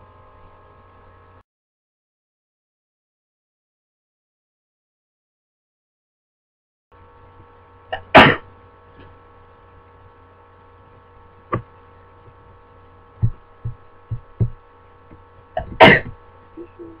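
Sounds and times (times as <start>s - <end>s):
steady electrical hum: 0.0s - 1.4s, 7.0s - 17.0s
person sneezing: 8.0s - 8.5s, 15.6s - 17.0s
soft low thumps: 13.2s - 17.0s.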